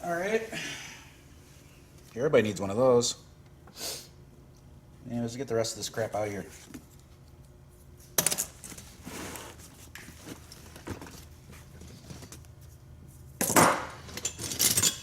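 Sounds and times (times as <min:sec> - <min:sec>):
metal tools clattering together: 0:14.1 - 0:15.0.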